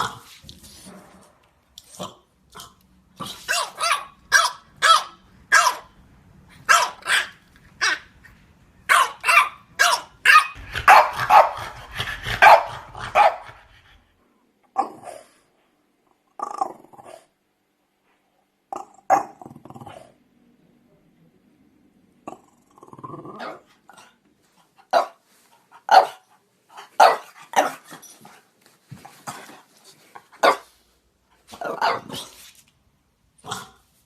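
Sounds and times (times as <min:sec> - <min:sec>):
dogs barking: 0:03.3 - 0:06.0, 0:06.6 - 0:08.1, 0:08.9 - 0:13.6, 0:25.9 - 0:26.2, 0:26.8 - 0:27.8, 0:30.4 - 0:30.7, 0:31.6 - 0:32.3.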